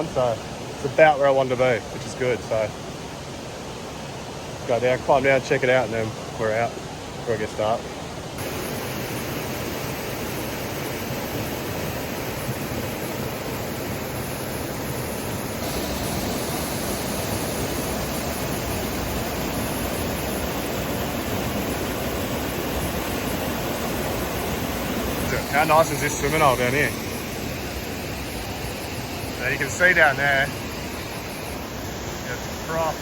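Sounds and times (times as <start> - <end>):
waterfall pouring into pool: 8.4 - 33.0.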